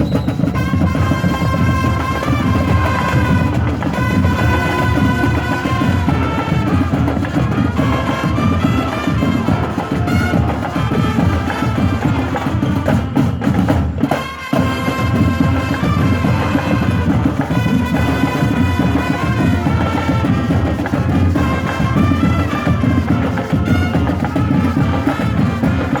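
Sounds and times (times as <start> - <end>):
high melody line: 0.0 - 13.7
drums beating rhythm: 0.0 - 26.0.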